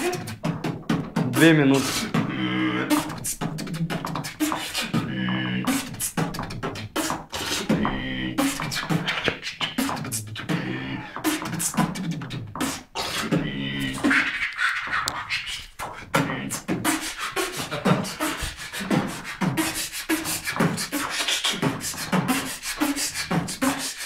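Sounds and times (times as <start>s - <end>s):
person beatboxing: 0.0s - 24.0s.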